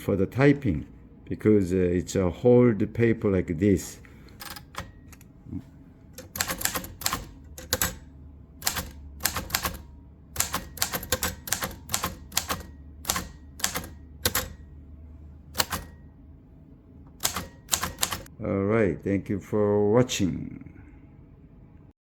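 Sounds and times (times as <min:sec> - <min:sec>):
typewriter key strikes: 0:04.4 - 0:05.2, 0:06.2 - 0:14.7, 0:15.5 - 0:16.0, 0:17.2 - 0:18.3.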